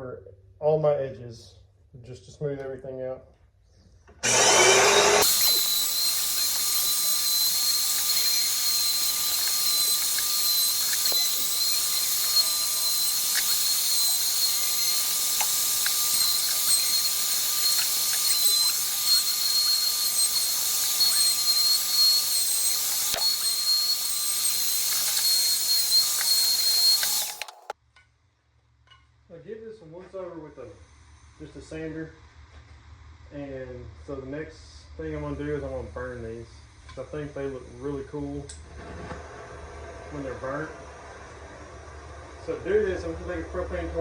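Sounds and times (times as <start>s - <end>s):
electric router high-pitched whine: 4.2s - 27.7s.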